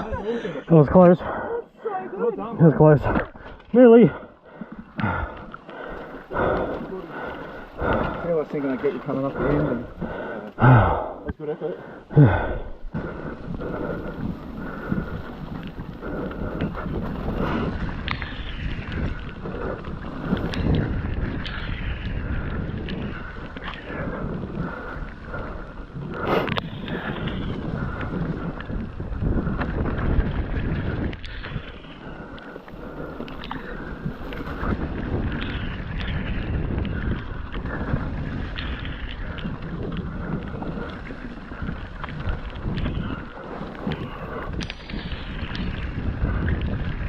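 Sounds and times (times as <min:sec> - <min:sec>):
wind buffeting microphone: 0:00.0 - 0:47.0
bike tyres rumbling over ground: 0:02.8 - 0:11.1, 0:12.1 - 0:47.0
bike rattling over bumps: 0:12.3 - 0:47.0.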